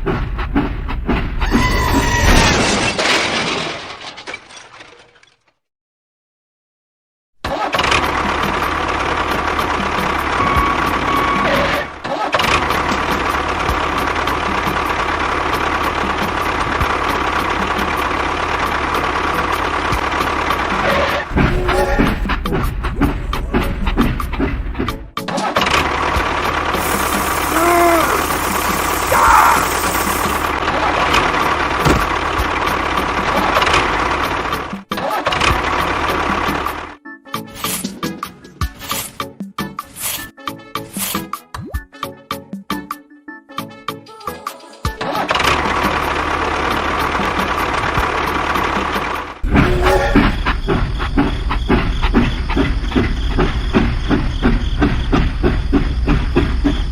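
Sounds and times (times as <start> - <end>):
small engine running with rattling knock: 7.7 - 11.0, 12.3 - 21.6, 22.3 - 37.0, 45.3 - 56.9
small machine running: 26.2 - 30.6.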